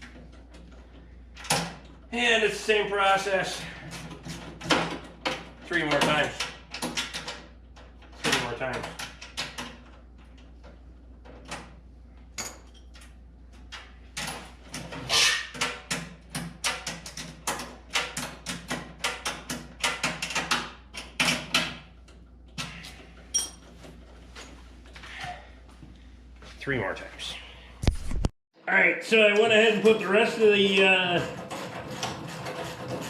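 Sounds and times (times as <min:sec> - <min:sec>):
metallic ring: 0:23.3 - 0:23.6.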